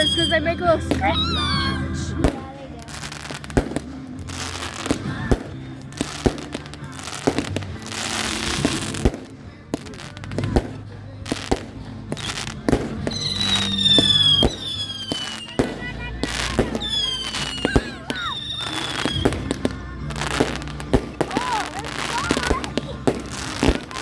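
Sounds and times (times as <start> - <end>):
firework high falling whistle: 0.0 - 1.8, 13.1 - 19.5
fireworks bangs and crackles: 0.0 - 24.0
firework hissing: 2.2 - 24.0.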